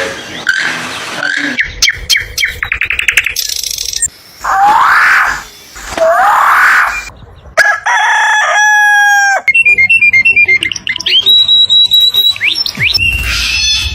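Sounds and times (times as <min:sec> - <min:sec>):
harsh rising bird call: 0:04.4 - 0:07.1.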